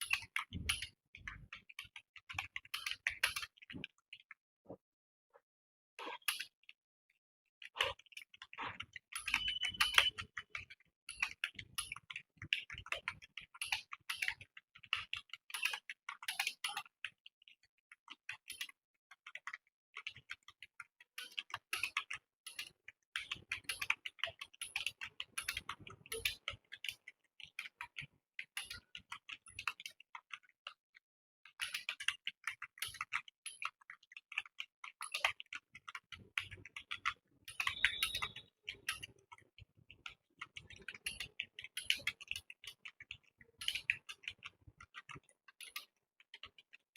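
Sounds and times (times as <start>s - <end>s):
fast typing on keyboard: 8.8s - 10.6s.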